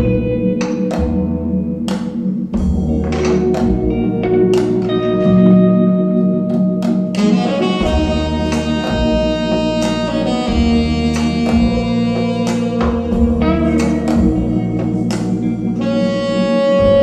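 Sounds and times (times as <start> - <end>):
jazz music over loudspeakers: 0.0 - 17.0.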